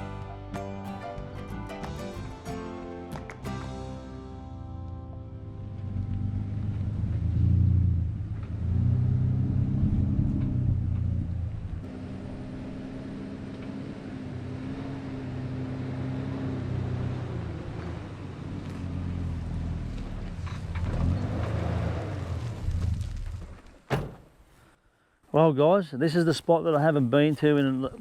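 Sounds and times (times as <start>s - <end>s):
off-road vehicle engine running: 3.2s - 23.7s.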